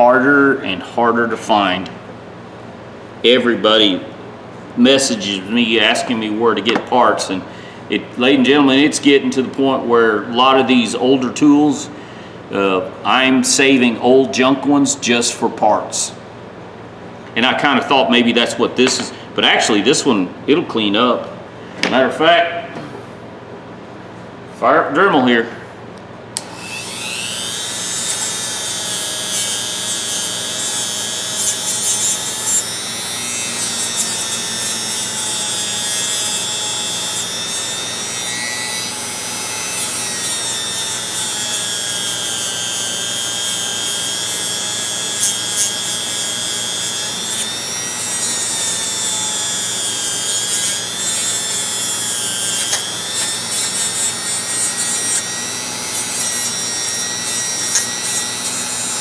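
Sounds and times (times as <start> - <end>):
rotary tool grinding metal: 26.4 - 59.0.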